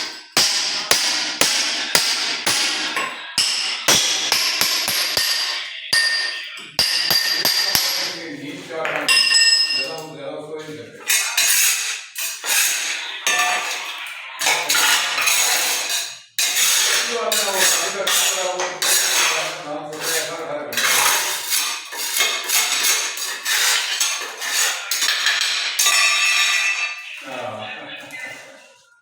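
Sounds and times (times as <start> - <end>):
metal tool scraping tile: 0.0 - 8.6, 11.0 - 27.0.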